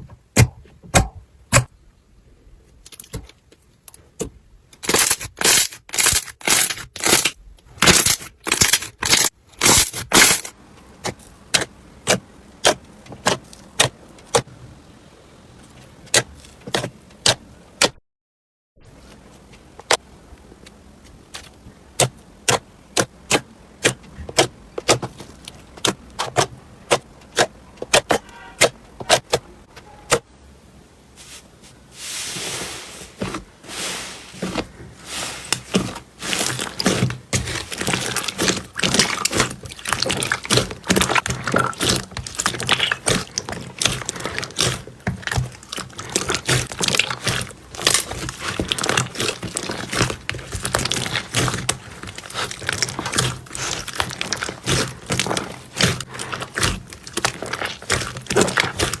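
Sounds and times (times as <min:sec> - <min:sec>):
slime crackling and squishing: 0:04.8 - 0:14.5, 0:32.0 - 0:59.0
slime popping: 0:35.5 - 0:59.0.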